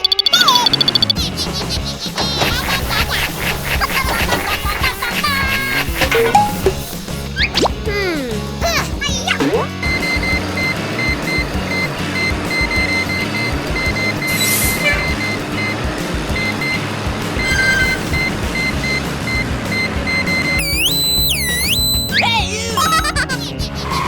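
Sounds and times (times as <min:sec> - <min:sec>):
short electronic beeps: 0:06.1 - 0:06.9, 0:17.4 - 0:22.3.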